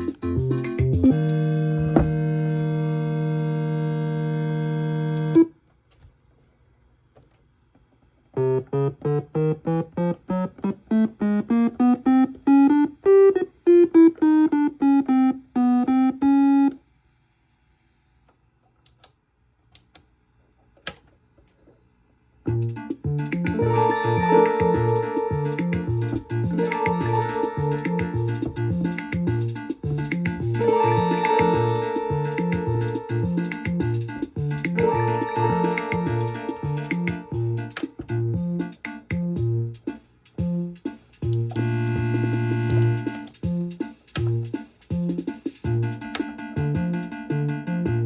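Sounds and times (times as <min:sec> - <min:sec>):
electronic instrument held chord: 0:00.9 - 0:05.5, 0:08.4 - 0:16.8, 0:23.5 - 0:38.6, 0:41.5 - 0:43.3
electronic single notes: 0:01.0 - 0:05.5, 0:23.4 - 0:38.7.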